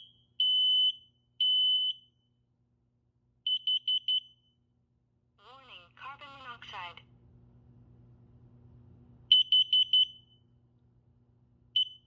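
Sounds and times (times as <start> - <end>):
smoke alarm long beeps: 0.0 - 2.2, 3.5 - 4.6, 9.3 - 10.4, 11.8 - 12.0.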